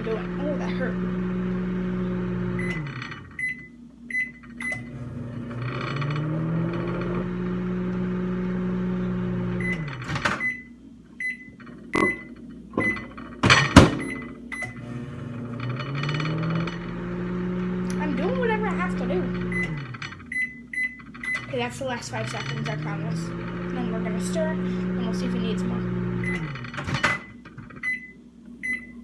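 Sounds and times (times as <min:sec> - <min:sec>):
microwave oven humming: 0:00.0 - 0:29.0
keypad beeps: 0:10.4 - 0:13.1, 0:27.8 - 0:29.0
clicks and knocks: 0:11.5 - 0:17.0.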